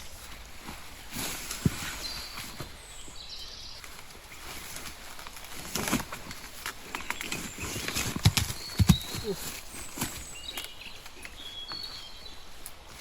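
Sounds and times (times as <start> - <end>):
faint bird chirps: 6.9 - 12.6.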